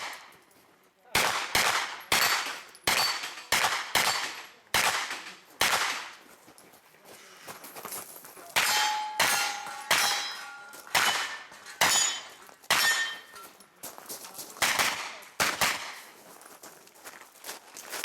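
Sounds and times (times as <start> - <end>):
gunshots: 0.0 - 0.3, 1.1 - 6.2, 8.6 - 13.2, 14.6 - 16.1
steel plate clanging: 8.6 - 13.4.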